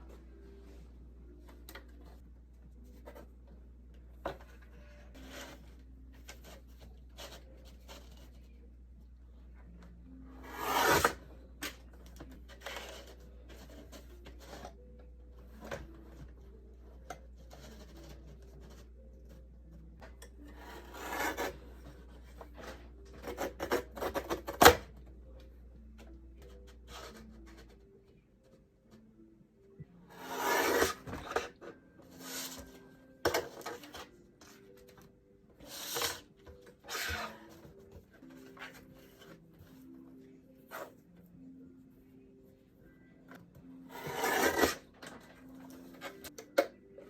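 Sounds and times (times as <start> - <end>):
paper being cut: 10.5 - 11.2, 30.2 - 31.4, 43.9 - 44.9.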